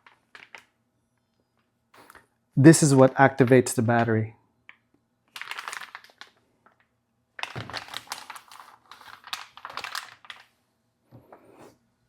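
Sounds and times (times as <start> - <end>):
packaging rustling: 0.0 - 0.8, 5.3 - 10.6.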